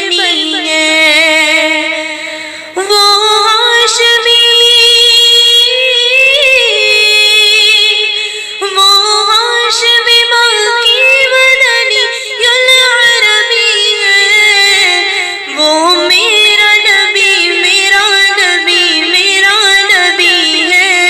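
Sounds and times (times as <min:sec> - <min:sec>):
person singing unaccompanied: 0:00.0 - 0:21.0.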